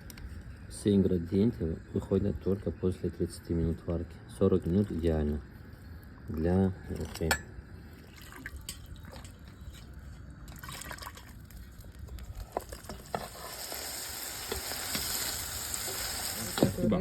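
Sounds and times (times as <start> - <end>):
sizzling hiss: 12.8 - 17.0.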